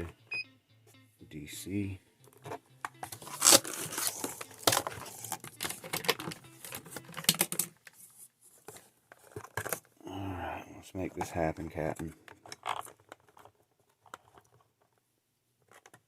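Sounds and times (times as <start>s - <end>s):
clicks rattles and crinkling rustles: 2.2s - 10.0s, 11.2s - 16.0s.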